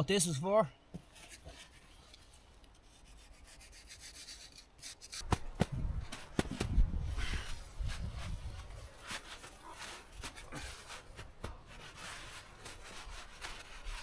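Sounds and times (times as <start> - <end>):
uneven scraping: 1.0 - 14.0.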